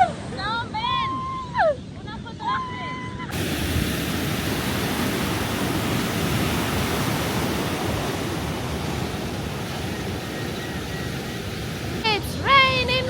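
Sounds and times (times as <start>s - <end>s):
ocean surf breaking: 3.3s - 13.0s.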